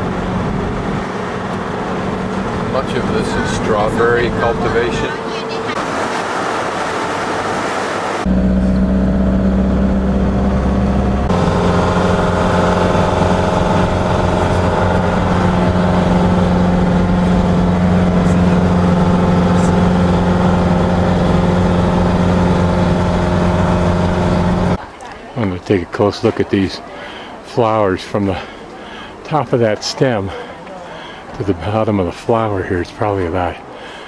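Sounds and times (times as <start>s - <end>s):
vehicle engine under load: 0.0s - 24.8s.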